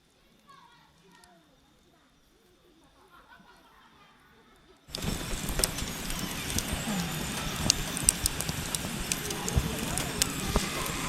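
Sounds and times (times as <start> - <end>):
campfire crackling and hissing: 4.9 - 11.0
distant voices: 4.9 - 11.0
fire pops: 4.9 - 11.0.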